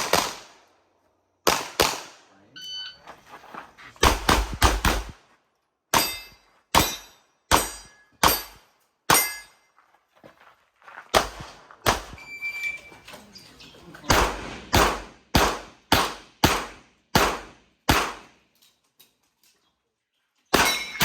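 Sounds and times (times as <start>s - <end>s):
pistol shots: 0.0s - 0.6s, 1.4s - 2.2s, 4.0s - 5.2s, 11.2s - 12.2s, 14.1s - 18.4s.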